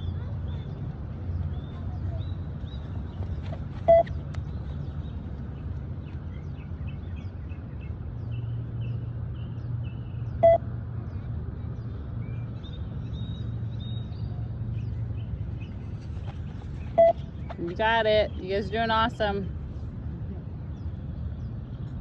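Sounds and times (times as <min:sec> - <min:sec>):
birds chirping: 0:14.8 - 0:19.4
short electronic beep: 0:17.0 - 0:17.2.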